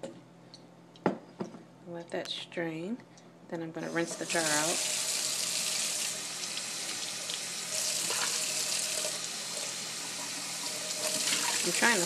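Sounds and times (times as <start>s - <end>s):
tap water pouring into jar: 7.8s - 11.7s.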